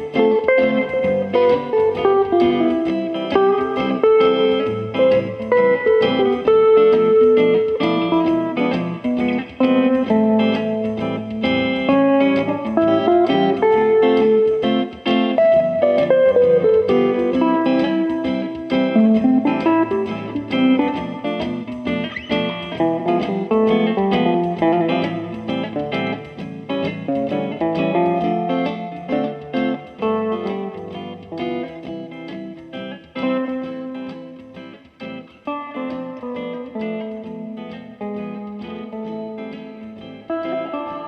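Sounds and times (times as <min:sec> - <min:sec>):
amplified acoustic guitar blues: 0:00.0 - 0:41.0.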